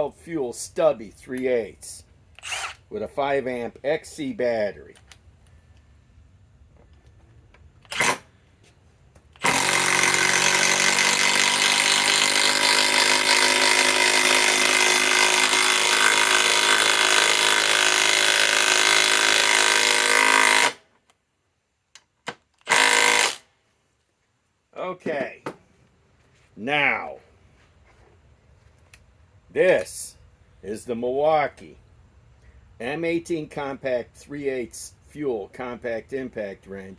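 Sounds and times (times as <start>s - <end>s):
impact wrench hammering: 9.4s - 20.8s, 22.7s - 23.4s.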